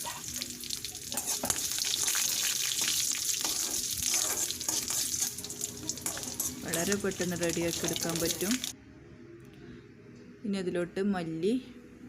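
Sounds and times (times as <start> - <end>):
seeds sizzling in hot oil: 0.0 - 8.7.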